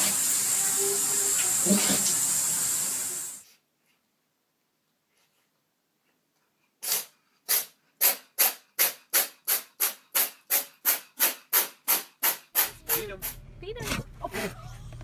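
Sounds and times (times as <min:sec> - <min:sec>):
steady hiss: 0:00.0 - 0:03.4
pet sneezing snorts: 0:01.6 - 0:02.1, 0:06.8 - 0:07.6.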